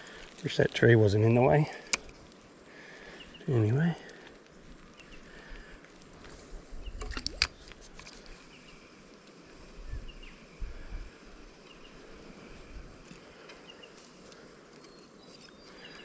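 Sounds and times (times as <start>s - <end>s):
sharp clicks: 1.8s - 2.2s, 7.0s - 7.6s
faint bird chirps: 14.7s - 16.0s.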